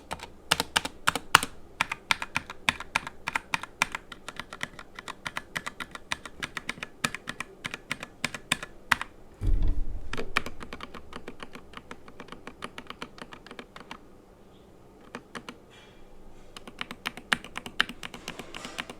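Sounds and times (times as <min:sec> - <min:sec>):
keyboard keys clacking: 0:00.0 - 0:09.1, 0:10.1 - 0:14.0, 0:16.6 - 0:18.9
deep thud: 0:09.4 - 0:11.1.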